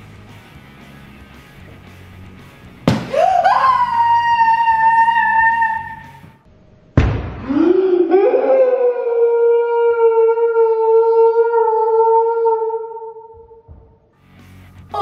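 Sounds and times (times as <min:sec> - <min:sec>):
balloon bursting smack: 0:02.9 - 0:03.2, 0:07.0 - 0:07.5
high-pitched screams: 0:03.1 - 0:06.2.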